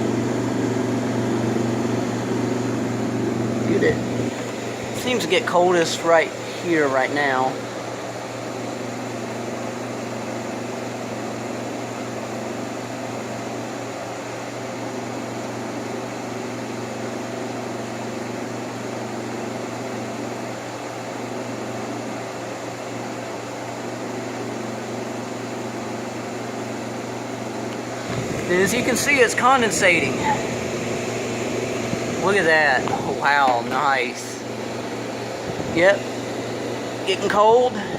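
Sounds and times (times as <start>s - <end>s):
air conditioner blower rushing: 0.0s - 37.9s
constant low hum: 27.6s - 37.9s.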